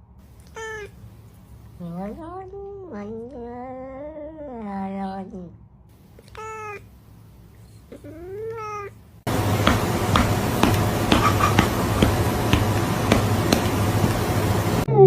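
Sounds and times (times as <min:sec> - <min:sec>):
cat meowing: 0:00.4 - 0:01.0
loud hiss with clicks: 0:09.3 - 0:14.9.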